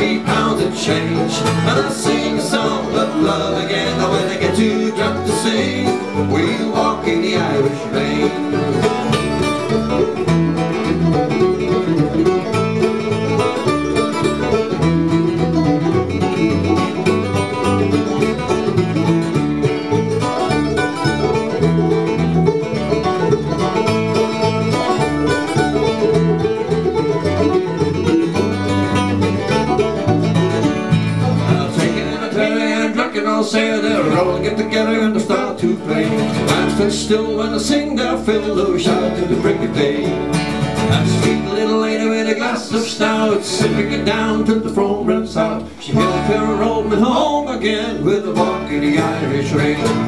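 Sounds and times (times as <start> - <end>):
pulsing bass line: 0.0 - 32.9
banjo picking: 0.0 - 50.0
strummed guitar: 0.0 - 50.0.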